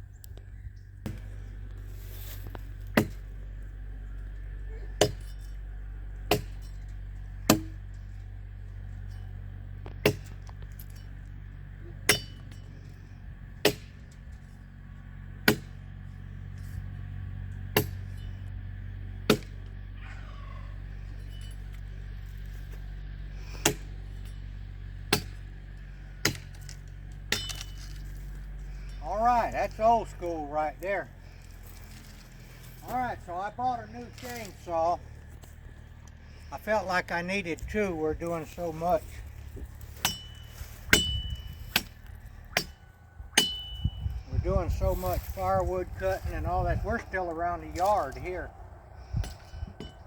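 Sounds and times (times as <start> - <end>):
steady low hum: 0.0 - 50.0
sharp metallic strikes: 43.4 - 43.8.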